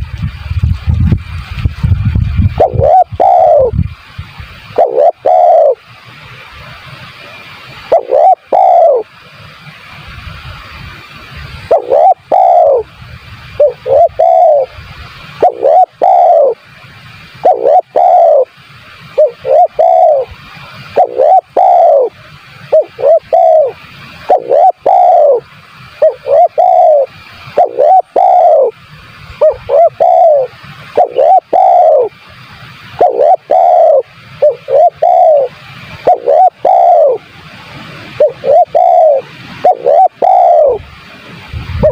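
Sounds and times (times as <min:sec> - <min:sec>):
dove cooing: 0:02.6 - 0:03.8, 0:04.7 - 0:05.8, 0:07.9 - 0:09.1, 0:11.7 - 0:12.9, 0:13.6 - 0:14.7, 0:15.4 - 0:16.6, 0:17.4 - 0:18.6, 0:19.2 - 0:28.8, 0:29.4 - 0:32.2, 0:32.9 - 0:37.3, 0:38.1 - 0:40.8.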